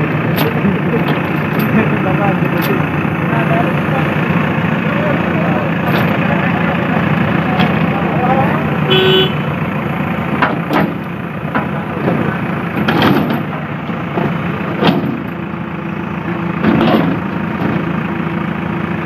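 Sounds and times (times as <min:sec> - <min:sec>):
heavy vehicle engine running: 0:00.0 - 0:19.0
sharp knocks and clanks: 0:00.3 - 0:03.0, 0:05.7 - 0:06.4, 0:07.5 - 0:07.9, 0:10.4 - 0:15.4, 0:16.6 - 0:17.9.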